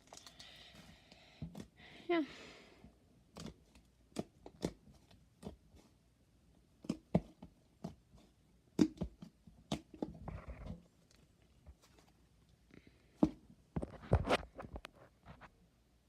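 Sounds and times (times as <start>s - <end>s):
slime squishing: 3.2s - 6.0s.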